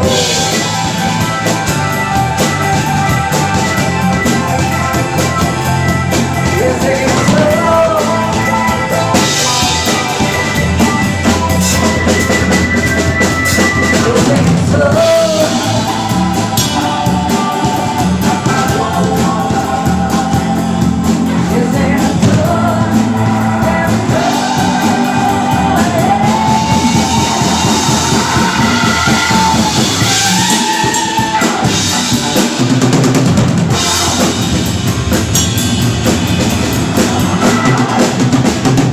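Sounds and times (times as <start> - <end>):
drum kit playing a beat: 0.0 - 38.9
person singing wordless ad-libs: 6.4 - 9.2, 13.8 - 31.5.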